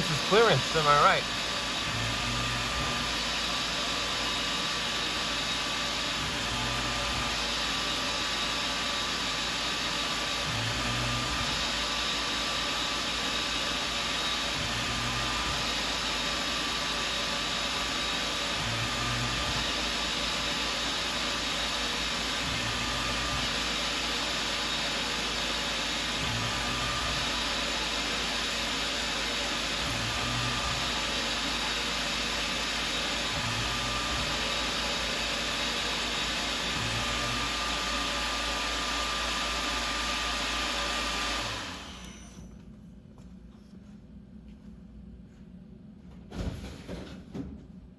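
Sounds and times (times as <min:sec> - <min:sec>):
milling machine spindle whining: 0:00.0 - 0:42.7.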